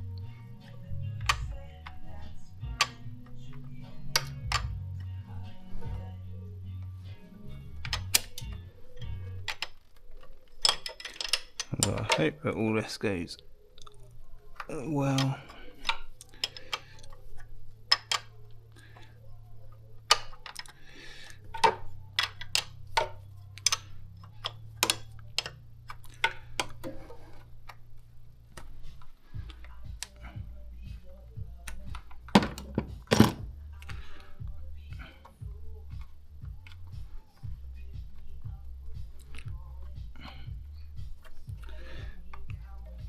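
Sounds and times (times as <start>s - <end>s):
hand tools clicking on metal: 7.8s - 12.4s, 20.1s - 27.2s.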